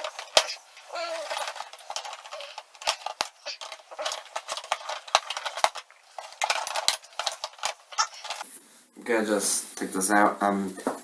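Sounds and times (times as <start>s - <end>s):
packaging rustling: 0.0s - 8.4s.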